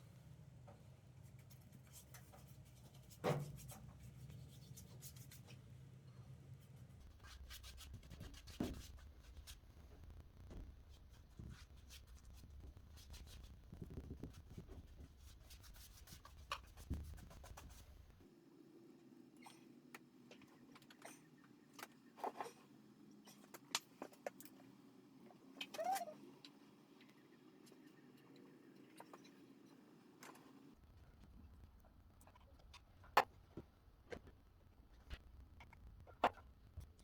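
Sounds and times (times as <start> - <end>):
rubbing and scratching on wood: 10.9 - 18.0.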